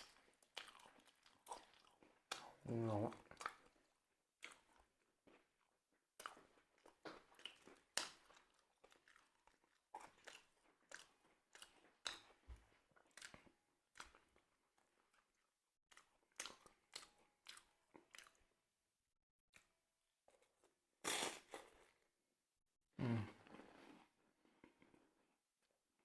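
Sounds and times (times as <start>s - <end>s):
crunchy chewing of crisp bread: 0.0s - 2.6s, 3.2s - 18.6s.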